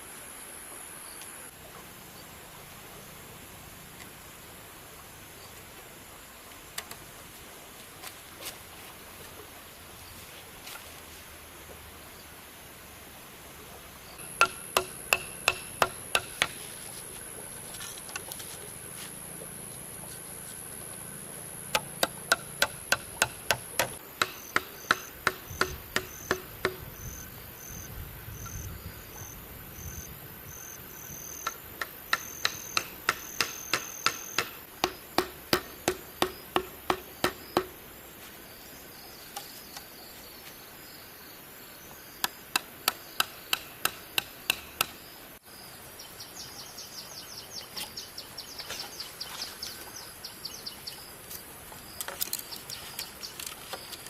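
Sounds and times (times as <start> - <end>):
tool striking bamboo: 14.2 - 16.6, 21.7 - 26.8, 31.4 - 37.8, 42.2 - 45.0.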